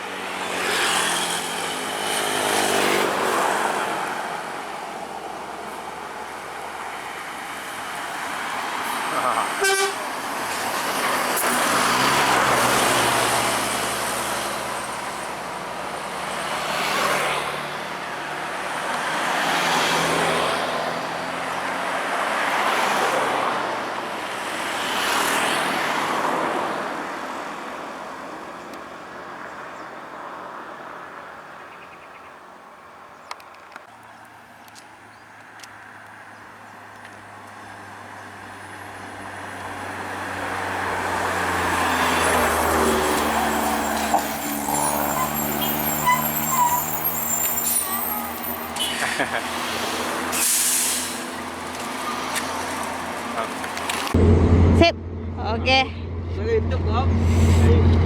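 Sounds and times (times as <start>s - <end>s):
heavy vehicles passing: 0.0s - 31.1s, 36.6s - 58.0s
engine hum: 40.0s - 58.0s.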